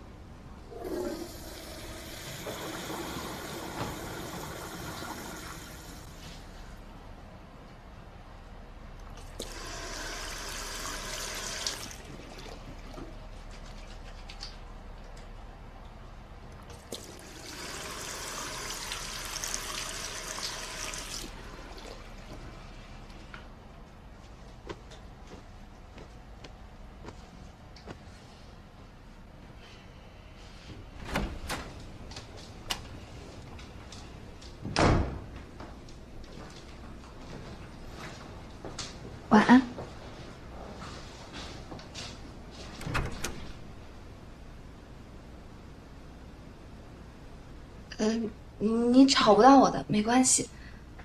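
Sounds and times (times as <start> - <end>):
water rushing through plumbing: 0.6 - 6.2, 9.2 - 14.6, 16.7 - 23.2.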